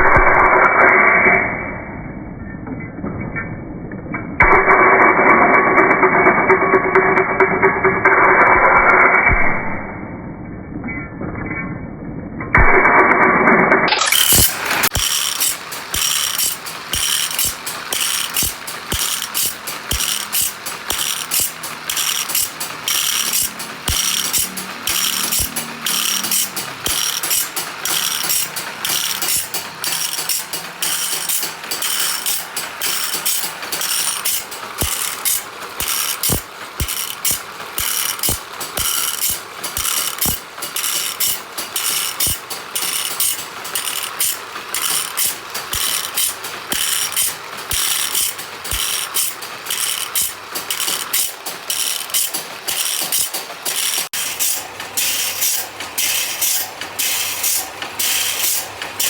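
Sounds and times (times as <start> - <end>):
blade sharpening machine clicking: 13.9 - 59.0
steady grinding hiss: 14.3 - 59.0.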